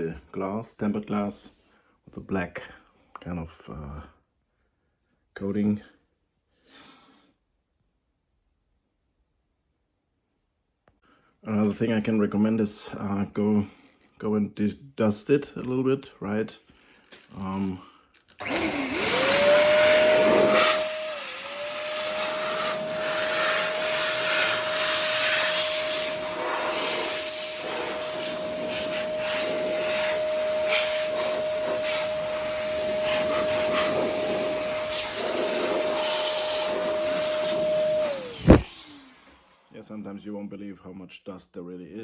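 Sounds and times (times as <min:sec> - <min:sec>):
electric duster motor whine: 0:18.4 - 0:39.7
rushing air: 0:22.2 - 0:38.7.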